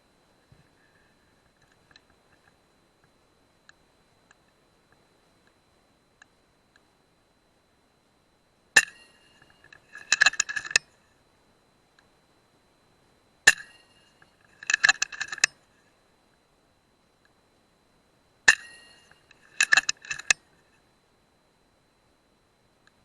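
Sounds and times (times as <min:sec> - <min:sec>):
metallic clicks and clinks: 0:08.8 - 0:10.8, 0:13.5 - 0:15.6, 0:18.5 - 0:20.4.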